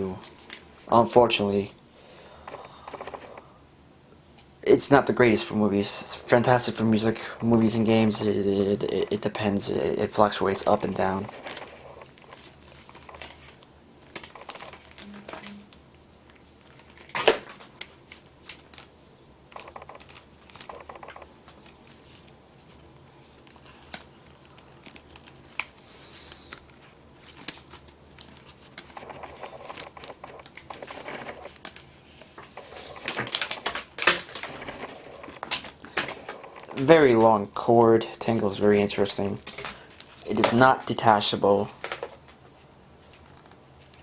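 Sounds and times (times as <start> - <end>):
packaging rustling and crinkling: 6.3 - 15.6, 16.2 - 37.2.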